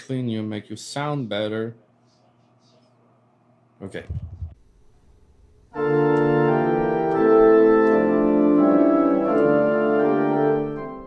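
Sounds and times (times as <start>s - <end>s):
electronic organ chords: 5.7s - 11.0s.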